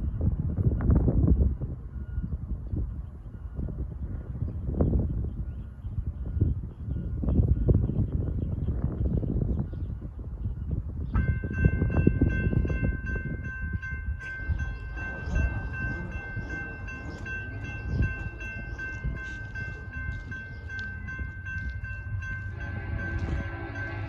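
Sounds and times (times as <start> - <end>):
crossing signal bell ringing: 11.2 - 24.0.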